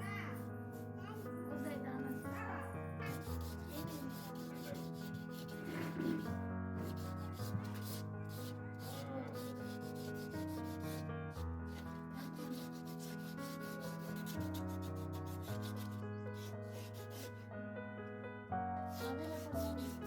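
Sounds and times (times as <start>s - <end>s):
background music: 0.0s - 11.1s, 11.7s - 20.0s
sandpaper rasping on metal: 3.1s - 11.0s, 11.7s - 17.3s, 19.0s - 20.0s.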